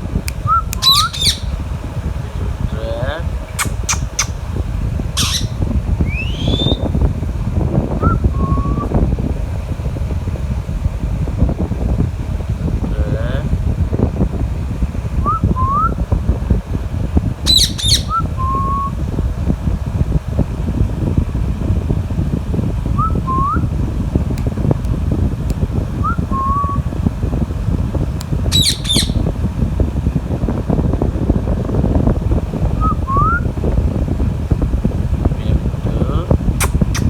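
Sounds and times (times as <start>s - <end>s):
steady low rumble: 0.0s - 37.0s
parakeet squawks: 0.8s - 1.6s, 3.5s - 4.4s, 5.2s - 6.9s, 17.5s - 18.2s, 28.5s - 29.2s
rising whistle notes: 6.1s - 6.8s.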